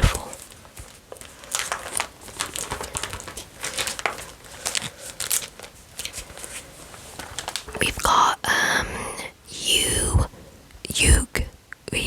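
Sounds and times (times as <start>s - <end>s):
plastic binder pages crinkling: 0.0s - 8.0s.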